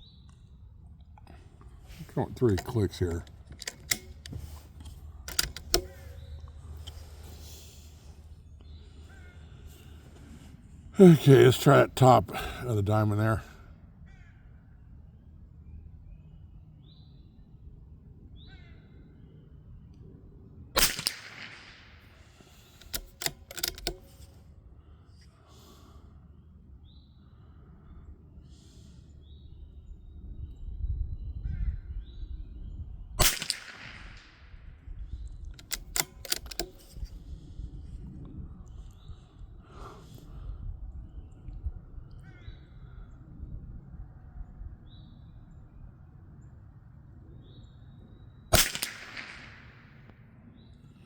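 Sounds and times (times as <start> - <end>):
rifle bolt clicking: 2.4 - 7.1, 22.6 - 24.3, 35.6 - 37.2
rifle shots: 20.8 - 22.1, 33.2 - 34.4, 48.5 - 50.1.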